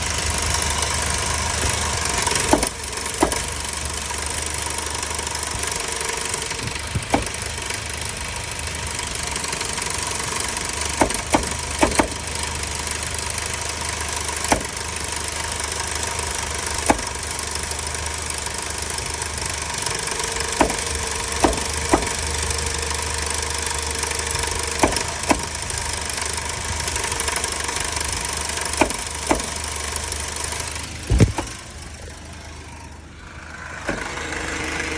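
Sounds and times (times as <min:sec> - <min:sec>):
car engine hum: 0:00.0 - 0:34.9
sharp knocks: 0:02.5 - 0:03.6, 0:06.6 - 0:07.6, 0:11.0 - 0:12.2, 0:14.4 - 0:14.9, 0:16.8 - 0:17.2, 0:20.6 - 0:22.3, 0:24.8 - 0:25.5, 0:28.7 - 0:29.6, 0:31.1 - 0:31.6.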